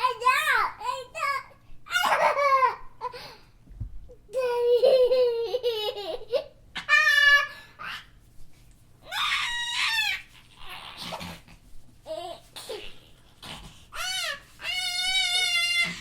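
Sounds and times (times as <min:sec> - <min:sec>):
child laughing and squealing: 0:01.9 - 0:03.1, 0:04.4 - 0:08.1, 0:09.0 - 0:11.4, 0:13.9 - 0:16.0.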